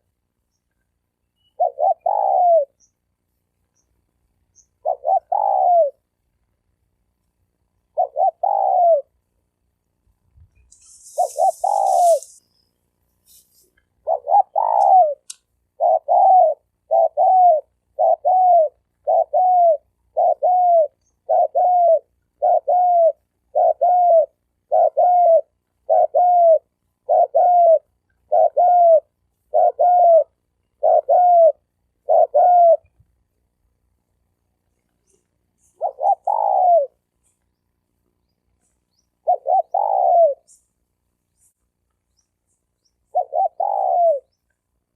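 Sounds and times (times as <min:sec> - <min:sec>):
dove cooing: 0:01.5 - 0:02.8, 0:04.7 - 0:06.1, 0:07.8 - 0:09.2, 0:10.9 - 0:12.4, 0:14.0 - 0:33.0, 0:35.0 - 0:37.1, 0:38.9 - 0:40.6, 0:43.1 - 0:44.4
brief hiss: 0:10.6 - 0:12.4.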